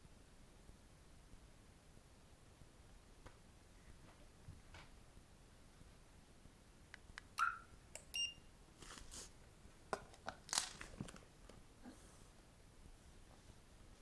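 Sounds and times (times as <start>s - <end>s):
remote button clicks: 7.2s - 8.3s
short electronic beeps: 7.4s - 8.4s
rustling: 8.8s - 9.5s.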